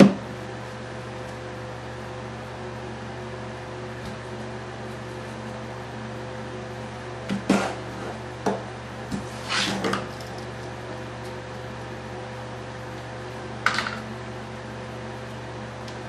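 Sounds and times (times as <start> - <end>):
steady background hum: 0.0 - 16.0.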